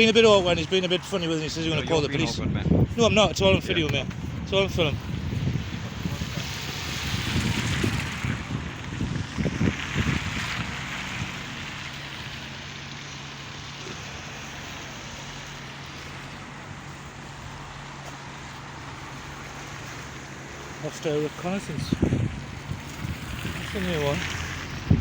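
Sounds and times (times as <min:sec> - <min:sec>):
outdoor wash of noise: 0:00.0 - 0:25.0
wind buffeting microphone: 0:01.4 - 0:12.6, 0:21.5 - 0:25.0.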